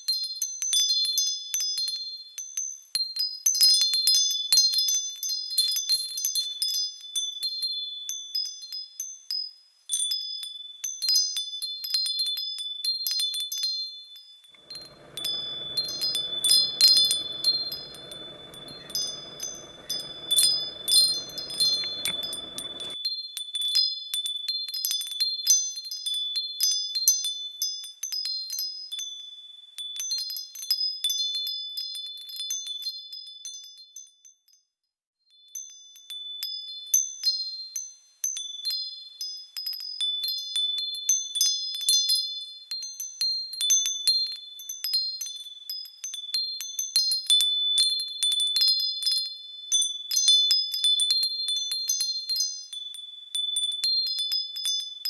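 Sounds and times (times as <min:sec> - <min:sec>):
metal wind chimes tinkling: 0:05.0 - 0:23.0, 0:35.4 - 0:55.0.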